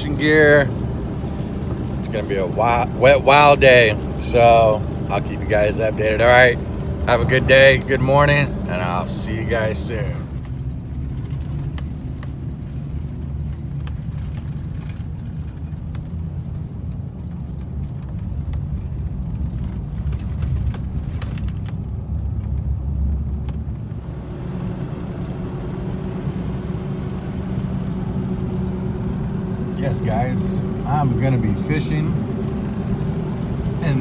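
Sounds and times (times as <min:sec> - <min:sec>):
faint drone: 0:00.0 - 0:13.1, 0:23.8 - 0:34.0
car interior road and engine rumble: 0:00.0 - 0:34.0.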